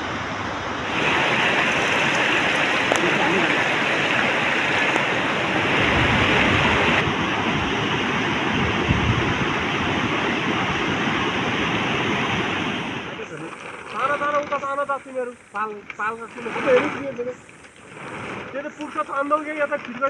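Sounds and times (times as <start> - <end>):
fast-flowing stream water: 0.0 - 14.4.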